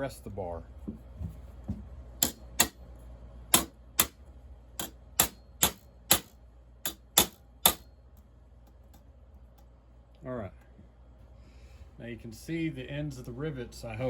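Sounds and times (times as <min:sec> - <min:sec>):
hammer tapping on steel: 0:02.2 - 0:02.8, 0:03.5 - 0:04.2, 0:04.8 - 0:06.3, 0:06.9 - 0:07.9.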